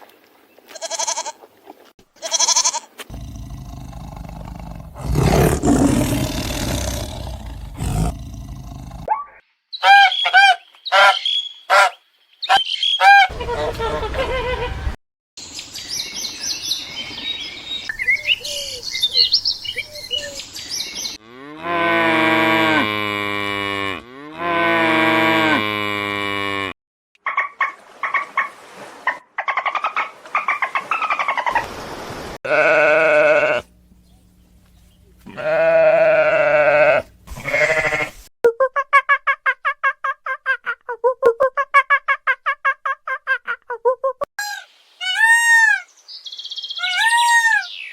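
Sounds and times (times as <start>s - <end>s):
livestock calling: 32.5s - 38.3s.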